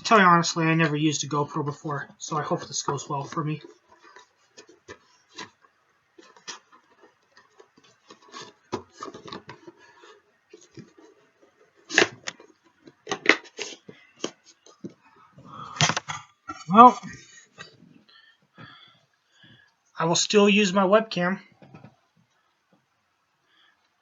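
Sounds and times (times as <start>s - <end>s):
packaging rustling: 2.3s - 16.3s.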